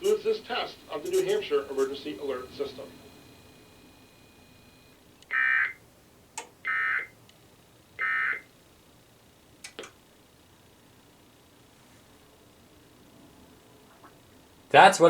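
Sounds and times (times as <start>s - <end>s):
buzzy digital data bursts: 0.0s - 5.9s, 6.6s - 11.6s, 12.2s - 15.0s
sharp clicks: 9.6s - 10.0s.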